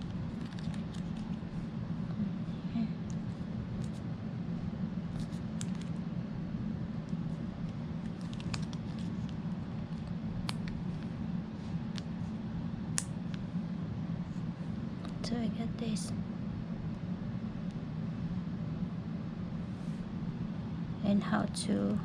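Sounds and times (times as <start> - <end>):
low hum: 0.0 - 22.0.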